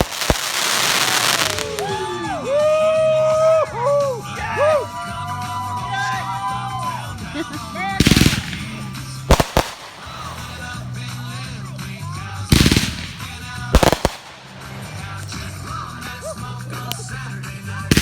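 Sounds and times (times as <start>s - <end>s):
fireworks bangs: 0.0s - 2.6s, 8.0s - 11.2s, 12.4s - 16.2s
fireworks crackling: 0.0s - 3.6s, 7.2s - 18.0s
background music: 0.1s - 18.0s.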